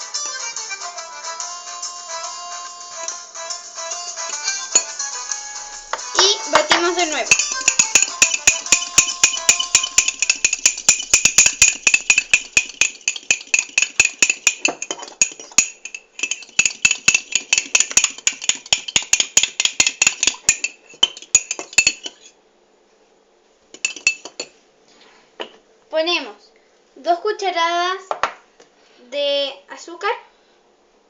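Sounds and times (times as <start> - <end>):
utensil clinking against dish: 5.9 - 22.3, 23.8 - 24.6.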